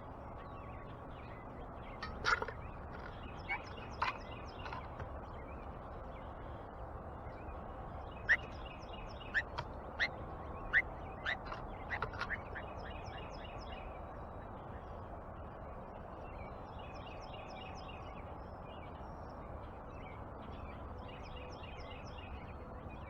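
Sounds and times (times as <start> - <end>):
birds chirping calls: 0.0 - 14.5.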